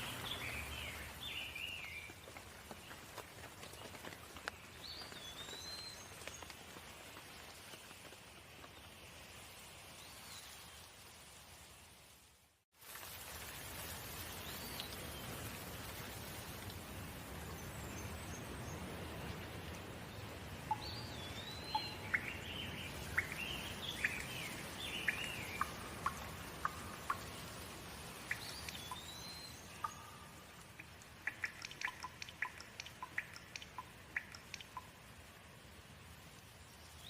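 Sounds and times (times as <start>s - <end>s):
steady rain falling: 0.0s - 37.0s
bird chirping: 20.7s - 27.6s, 28.2s - 35.1s.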